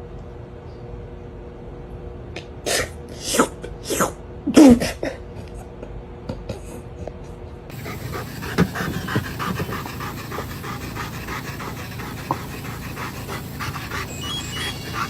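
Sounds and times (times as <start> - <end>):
sharp sneezes: 2.6 - 5.2.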